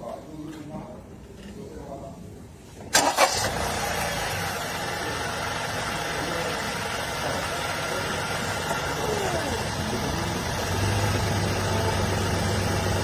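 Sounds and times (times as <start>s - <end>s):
car engine starting and running: 2.9s - 13.0s.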